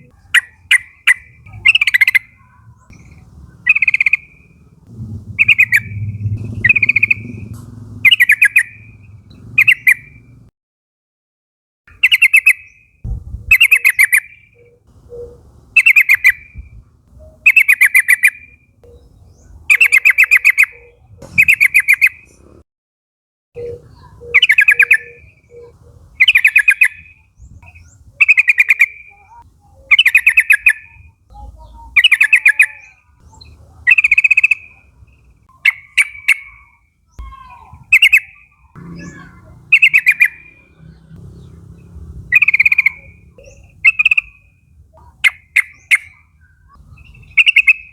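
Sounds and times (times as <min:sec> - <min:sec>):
bird calling bubbling phrase: 0:00.0 - 0:04.7, 0:05.4 - 0:07.4, 0:23.6 - 0:27.2, 0:28.2 - 0:47.9.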